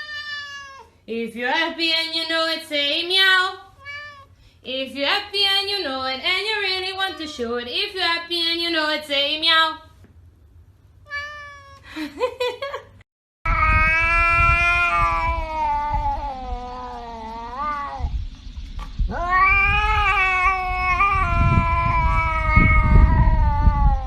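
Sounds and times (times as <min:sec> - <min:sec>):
cat yowling: 0:00.0 - 0:01.0, 0:03.8 - 0:04.3, 0:11.1 - 0:11.8, 0:13.5 - 0:18.1, 0:19.1 - 0:24.0.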